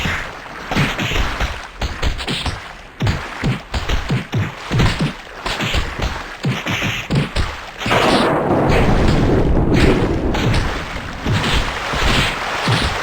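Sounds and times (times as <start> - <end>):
water splashing: 0.5 - 13.0
water pouring: 7.8 - 13.0.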